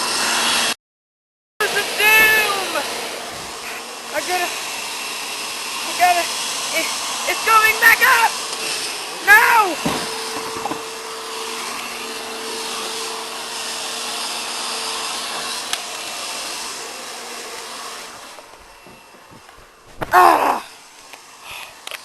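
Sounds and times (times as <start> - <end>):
vacuum cleaner motor whine: 0.0 - 0.8, 1.6 - 22.0
short falling cry: 20.0 - 20.7.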